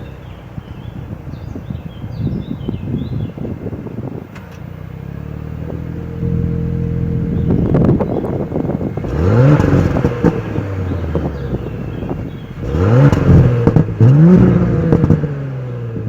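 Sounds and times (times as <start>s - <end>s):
car engine idling and revving: 0.0s - 16.0s
exhaust pops and crackles: 3.8s - 4.8s, 5.6s - 16.0s.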